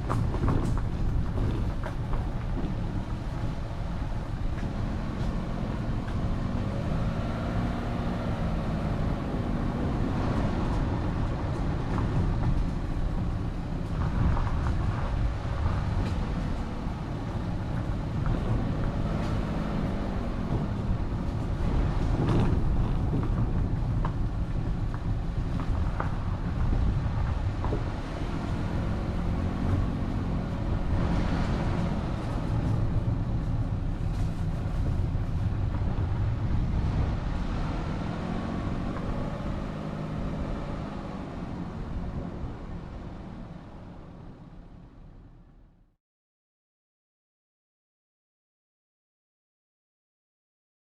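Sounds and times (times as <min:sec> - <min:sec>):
vehicle engine rising and falling: 0:00.0 - 0:45.1
road and wind rumble: 0:00.0 - 0:46.0.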